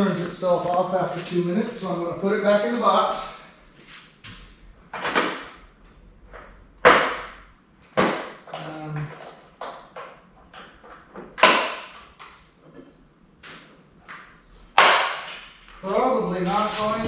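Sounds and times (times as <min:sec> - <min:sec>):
sharp knocks: 0:06.3 - 0:12.4, 0:14.1 - 0:15.6.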